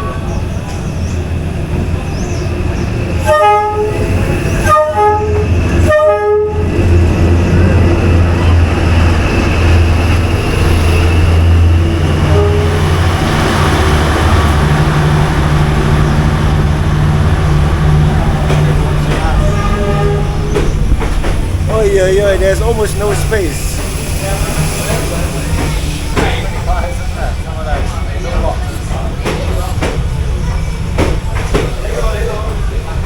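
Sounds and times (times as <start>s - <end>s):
diesel train engine rumble: 0.0s - 33.0s
train horn blasts: 3.2s - 6.8s, 12.0s - 13.1s, 18.5s - 20.7s.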